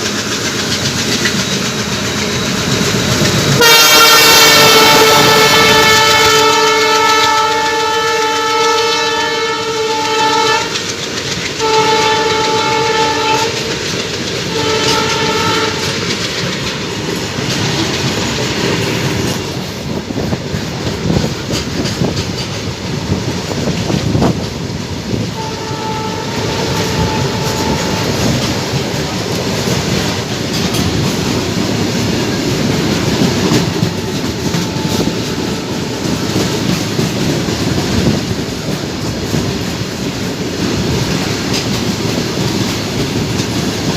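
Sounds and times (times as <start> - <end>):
train wheels rumbling on rails: 0.0 - 43.9
locomotive air horn blasts: 3.6 - 10.8, 11.6 - 13.7, 14.5 - 16.1, 25.3 - 28.6, 33.6 - 36.5.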